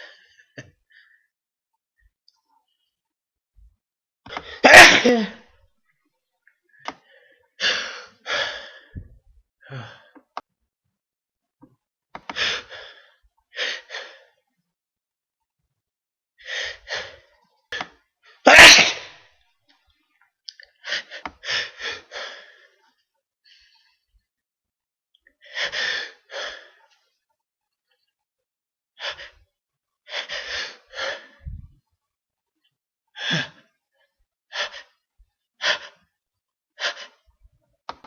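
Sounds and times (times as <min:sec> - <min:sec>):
person sneezing: 0:04.3 - 0:05.5, 0:18.5 - 0:19.2.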